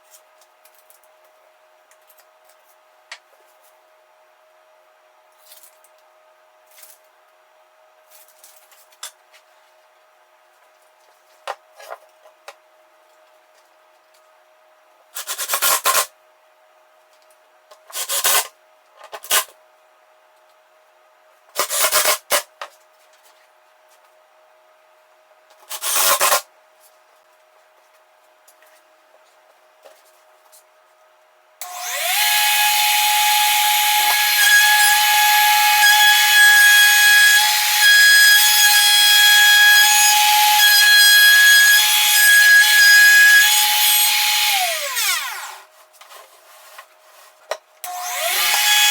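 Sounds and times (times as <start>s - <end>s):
power tool whining: 31.6s - 45.6s, 47.9s - 48.9s.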